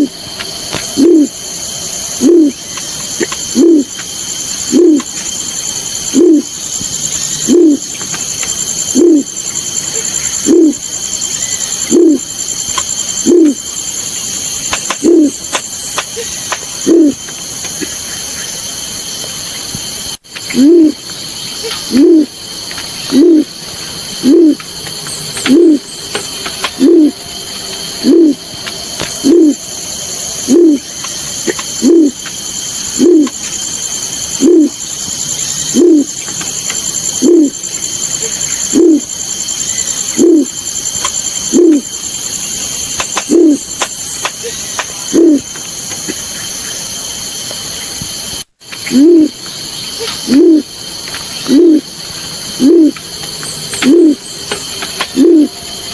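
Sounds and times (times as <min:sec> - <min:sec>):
low bird hoot call: 0:00.9 - 0:01.4, 0:02.2 - 0:04.0, 0:04.6 - 0:05.1, 0:06.1 - 0:06.6, 0:07.2 - 0:07.9, 0:08.9 - 0:13.6, 0:14.9 - 0:17.3, 0:20.5 - 0:21.0, 0:21.6 - 0:22.4, 0:23.1 - 0:23.6, 0:24.2 - 0:24.6, 0:25.4 - 0:25.9, 0:26.6 - 0:27.2, 0:28.0 - 0:28.5, 0:29.2 - 0:29.7, 0:30.4 - 0:32.2, 0:33.0 - 0:33.4, 0:34.3 - 0:34.8, 0:35.6 - 0:36.3, 0:37.1 - 0:40.7, 0:41.4 - 0:41.9, 0:43.2 - 0:43.8, 0:44.4 - 0:45.5, 0:48.9 - 0:49.4, 0:50.0 - 0:50.7, 0:51.4 - 0:51.9, 0:52.6 - 0:53.0, 0:53.7 - 0:54.3, 0:55.0 - 0:55.6.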